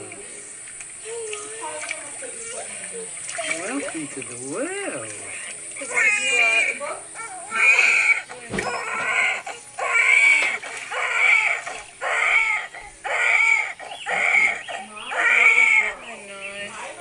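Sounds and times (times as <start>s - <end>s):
newborn baby crying: 5.8s - 16.0s.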